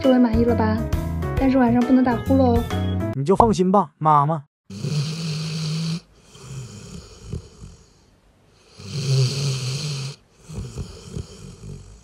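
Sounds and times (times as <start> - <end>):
dog snoring: 4.7 - 12.0.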